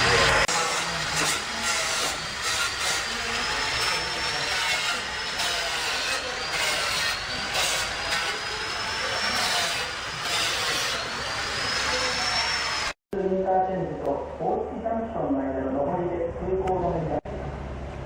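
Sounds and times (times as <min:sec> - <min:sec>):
power tool whining: 0:00.0 - 0:13.0.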